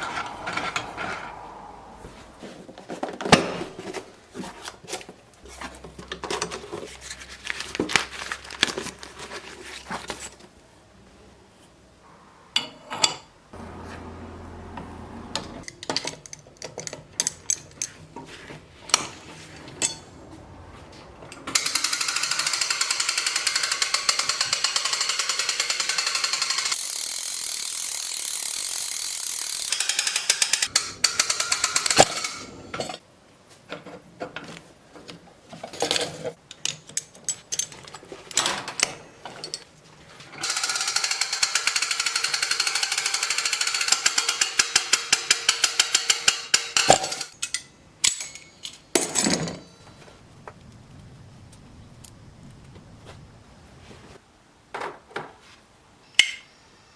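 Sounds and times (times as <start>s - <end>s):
metal tools clicking and tapping: 15.4s - 20.1s, 21.3s - 33.0s, 35.8s - 39.7s, 40.4s - 49.8s.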